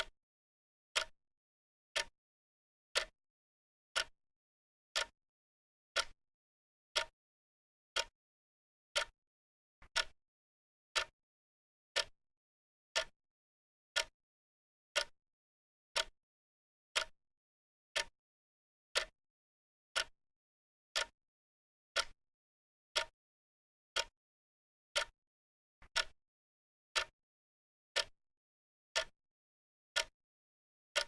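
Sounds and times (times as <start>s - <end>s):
clock ticking: 6.0s - 6.2s, 9.9s - 10.2s, 22.0s - 22.2s, 25.9s - 26.2s.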